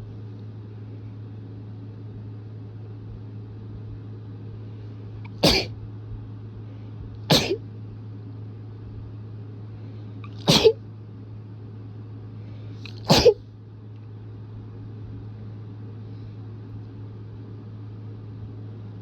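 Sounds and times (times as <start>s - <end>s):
person sneezing: 5.3s - 5.7s, 7.3s - 7.6s, 10.3s - 10.8s, 12.9s - 13.4s.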